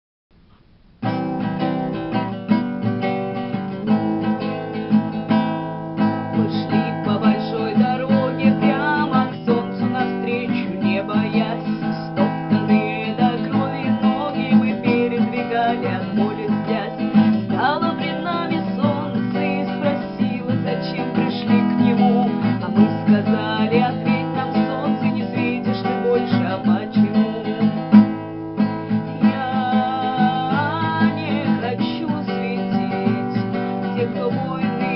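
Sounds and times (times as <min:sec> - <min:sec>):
acoustic guitar strumming: 0:00.5 - 0:34.9.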